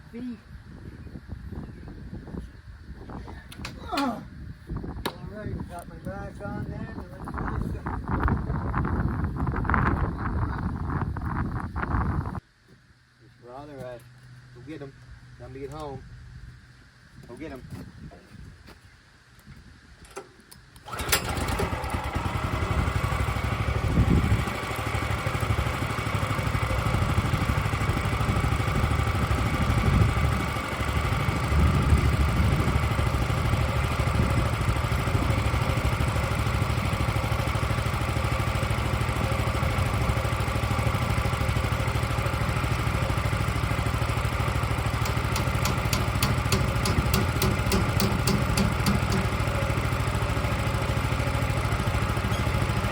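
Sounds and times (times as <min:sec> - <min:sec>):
sawmill engine running: 0:20.9 - 0:52.9.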